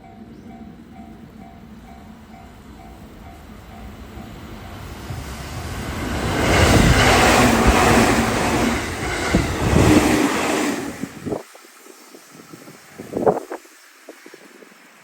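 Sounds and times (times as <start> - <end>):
electric train passing at speed: 0.0 - 15.0
train wheels knocking: 2.3 - 10.5.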